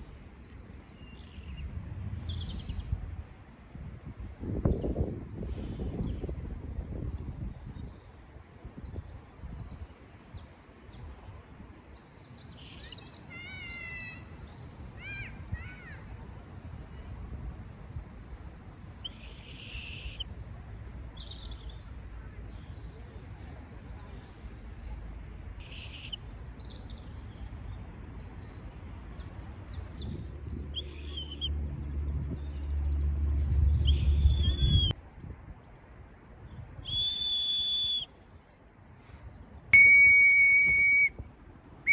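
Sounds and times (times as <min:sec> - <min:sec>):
low rumble on microphone: 0:00.0 - 0:10.0, 0:26.8 - 0:37.0
low wind rumble: 0:00.0 - 0:41.9
birds chirping: 0:19.0 - 0:23.1, 0:25.6 - 0:35.0
stick whistle high note: 0:39.8 - 0:41.1.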